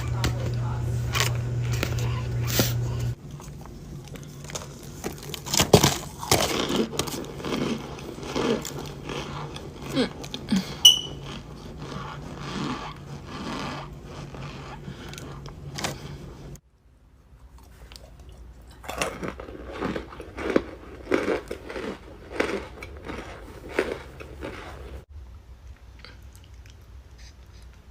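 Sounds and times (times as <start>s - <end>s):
steady low hum: 0.0s - 27.9s
packaging rustling and scraping: 4.1s - 8.9s
short high ping: 10.8s - 11.2s.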